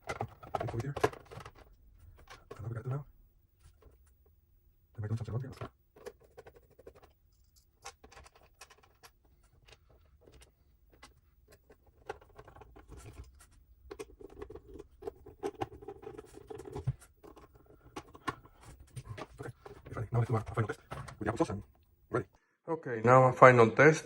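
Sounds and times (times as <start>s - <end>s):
plastic and metal parts clicking: 5.5s - 19.5s.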